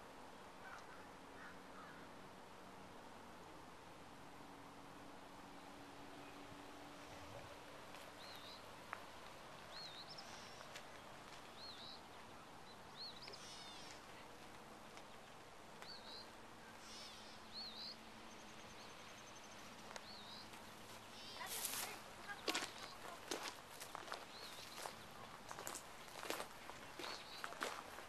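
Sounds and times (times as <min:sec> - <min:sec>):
faint bird chirps: 0:09.7 - 0:10.8, 0:11.5 - 0:14.2, 0:15.8 - 0:23.2.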